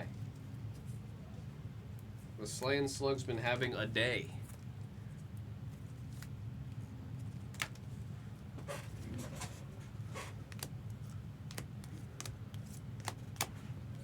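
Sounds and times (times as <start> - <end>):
steady low hum: 0.0 - 14.0
cards clicking and rustling: 10.4 - 13.6.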